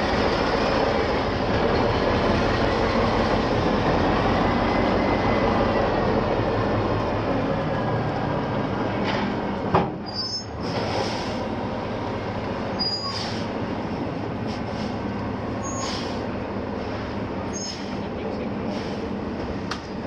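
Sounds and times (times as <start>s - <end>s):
crane diesel engine running: 0.0s - 20.0s
short high-pitched squeals: 12.8s - 13.4s, 15.6s - 16.0s.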